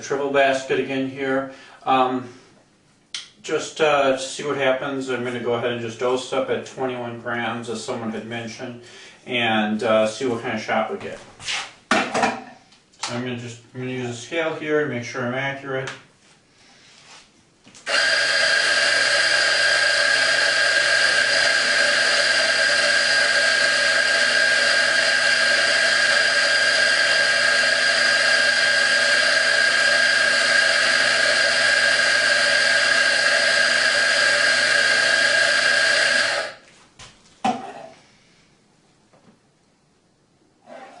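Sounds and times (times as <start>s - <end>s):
electric coffee grinder whining: 17.8s - 36.6s.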